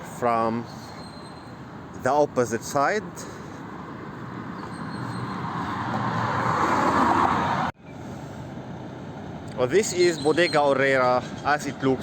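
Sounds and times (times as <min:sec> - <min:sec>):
vehicle approaching: 0:02.4 - 0:12.0.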